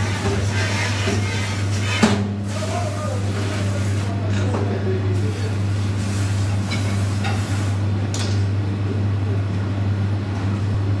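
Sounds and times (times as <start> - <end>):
kitchen machinery hum: 0.0 - 11.0.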